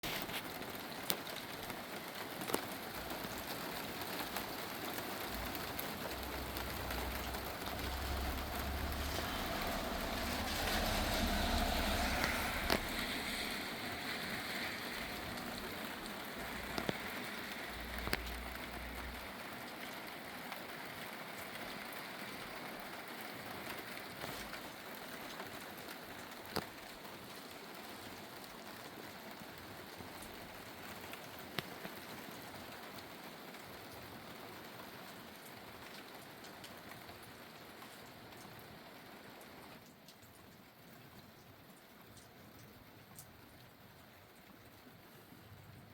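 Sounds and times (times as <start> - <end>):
rain falling: 0.0 - 45.9
low rumble: 5.3 - 19.2.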